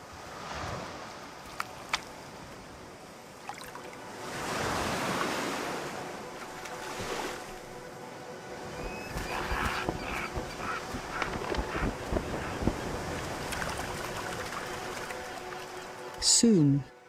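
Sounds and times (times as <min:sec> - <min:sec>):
waves breaking on a beach: 0:00.0 - 0:16.8.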